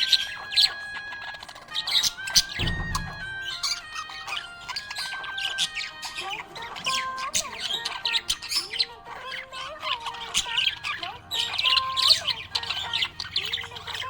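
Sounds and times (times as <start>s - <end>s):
background music: 0.0s - 14.0s
budgerigars chirping: 0.0s - 14.0s.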